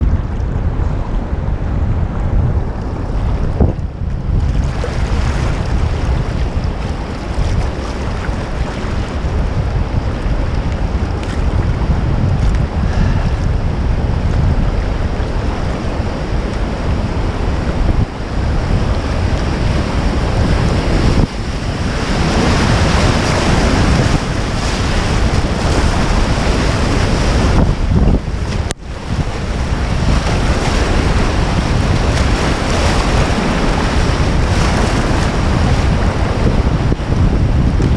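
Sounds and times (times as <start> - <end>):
wind buffeting microphone: 0.0 - 37.9
river water rushing: 14.5 - 37.3.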